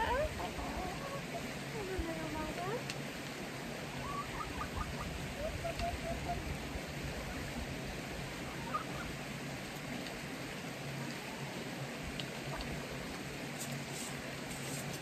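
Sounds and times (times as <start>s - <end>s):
chickens chirping softly: 0.0s - 1.6s, 3.8s - 10.2s
steady outdoor hiss: 0.0s - 15.0s.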